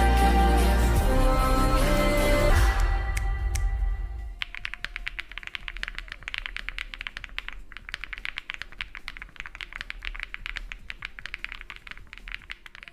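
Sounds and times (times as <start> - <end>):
fast mechanical keyboard typing: 4.4 - 12.9.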